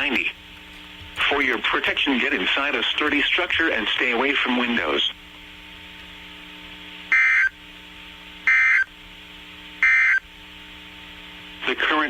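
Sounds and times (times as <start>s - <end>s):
steady low hum: 0.0s - 12.0s
warbling data squawks: 7.1s - 7.6s, 8.4s - 8.9s, 9.8s - 10.2s.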